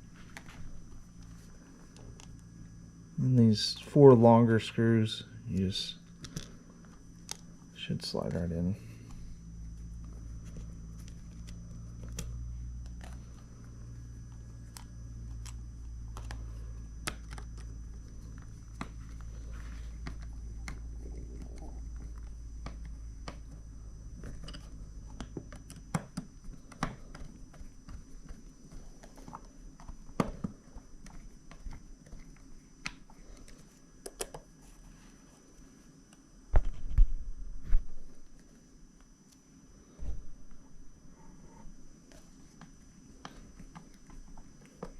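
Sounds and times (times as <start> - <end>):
low hum: 0.0 - 28.2.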